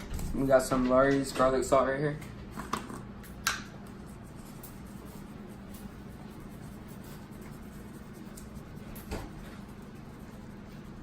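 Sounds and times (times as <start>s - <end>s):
steady low hum: 0.0s - 11.0s
salt shaker scratching: 3.8s - 11.0s.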